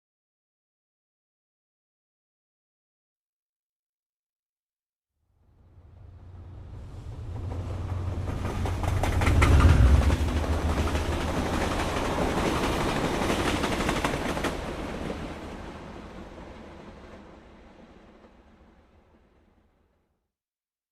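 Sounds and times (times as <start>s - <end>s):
train rumbling past: 5.4s - 19.4s
wheels clattering over rails: 6.3s - 15.5s.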